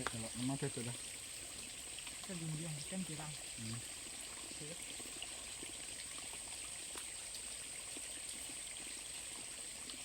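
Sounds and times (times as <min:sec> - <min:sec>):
flowing water rushing: 0:00.0 - 0:10.0
faint small ticks: 0:06.0 - 0:07.2.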